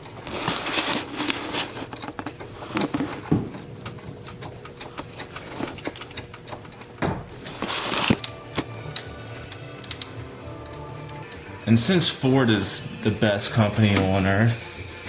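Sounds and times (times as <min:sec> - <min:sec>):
metal clicks and taps: 0:08.2 - 0:11.4.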